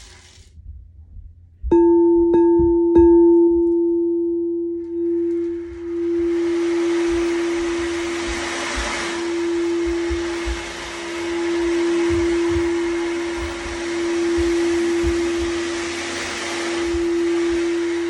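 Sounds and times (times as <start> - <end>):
ocean drum beads rolling: 0.0 - 0.5
singing bowl ringing: 1.7 - 18.0.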